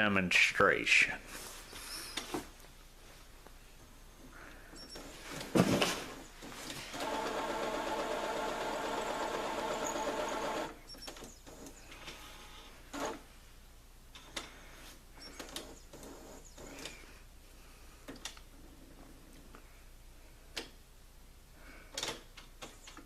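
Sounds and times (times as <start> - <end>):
printer motor whirring: 6.9 - 13.2.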